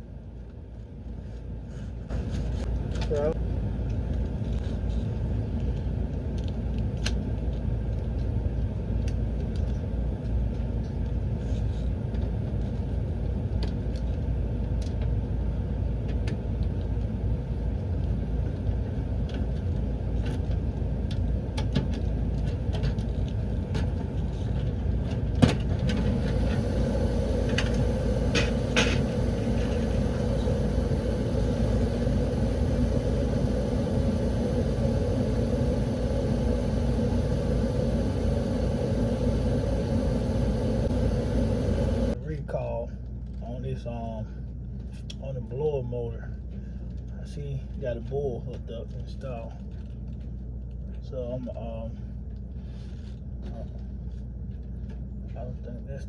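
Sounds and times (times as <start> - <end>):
furnace rumbling: 22.2 - 42.2
steady higher hum: 23.4 - 42.4.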